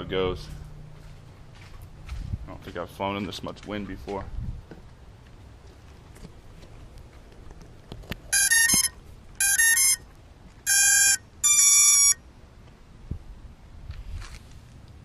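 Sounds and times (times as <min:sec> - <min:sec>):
low wind rumble: 0:00.0 - 0:02.7, 0:04.0 - 0:05.6, 0:12.3 - 0:15.0
electronic melodic beeps: 0:08.3 - 0:10.0, 0:10.7 - 0:12.2.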